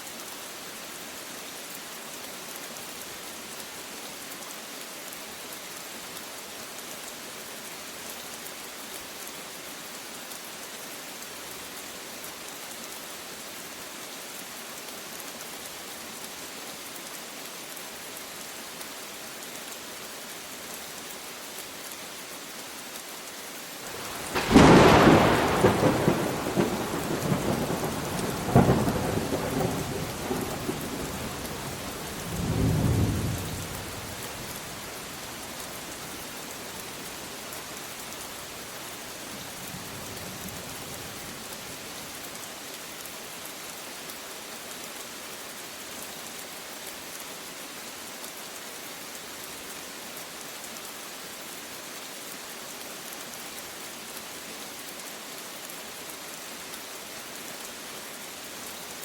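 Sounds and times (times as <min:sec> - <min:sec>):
steady rain falling: 0:00.0 - 0:59.0
thunder rumbling: 0:23.9 - 0:34.6.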